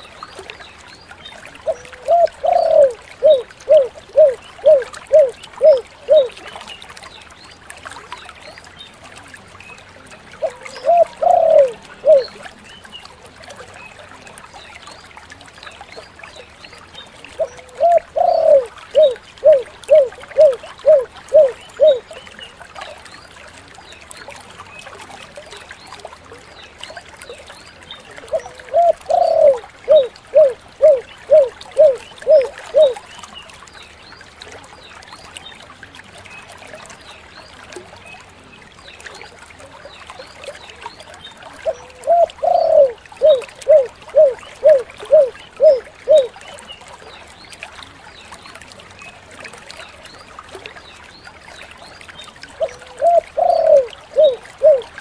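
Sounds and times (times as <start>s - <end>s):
dove cooing: 1.6s - 6.4s, 10.4s - 12.4s, 17.4s - 22.0s, 28.3s - 33.0s, 41.6s - 46.3s, 52.6s - 54.9s.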